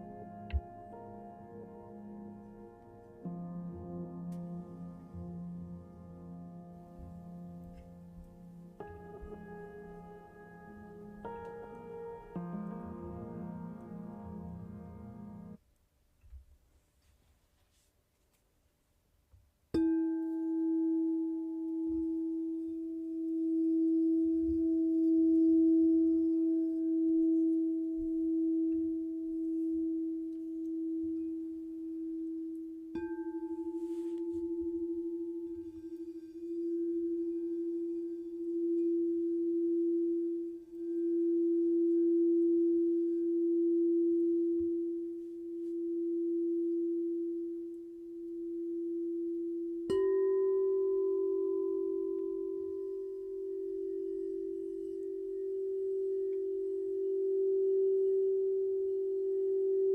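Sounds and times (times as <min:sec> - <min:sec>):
singing bowl ringing: 0:30.8 - 0:59.9.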